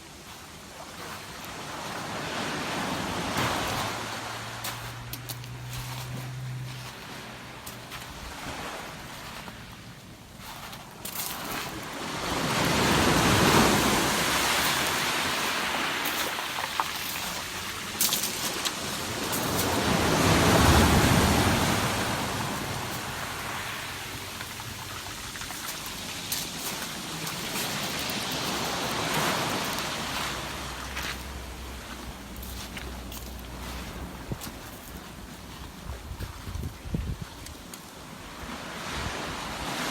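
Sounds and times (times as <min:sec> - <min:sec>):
surf breaking on pebble beach: 0:10.5 - 0:32.8.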